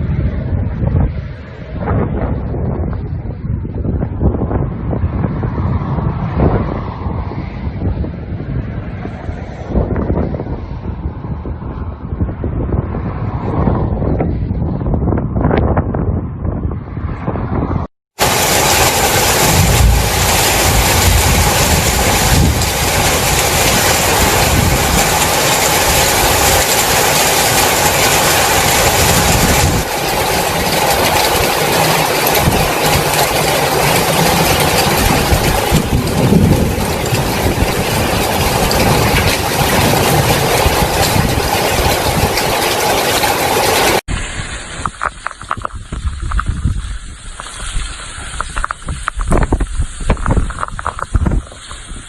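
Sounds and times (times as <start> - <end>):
torrential rain: 18.1 - 52.0.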